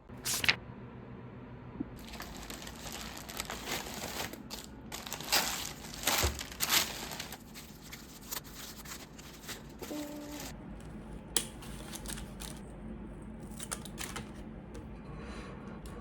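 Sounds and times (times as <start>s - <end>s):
packaging crinkling and rustling: 2.0s - 10.5s.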